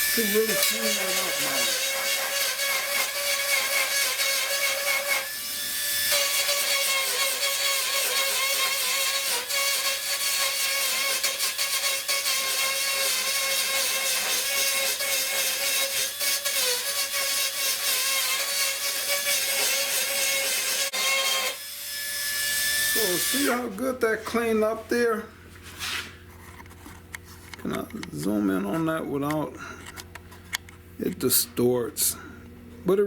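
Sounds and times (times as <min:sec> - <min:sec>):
power tool grinding metal: 0:00.0 - 0:23.8.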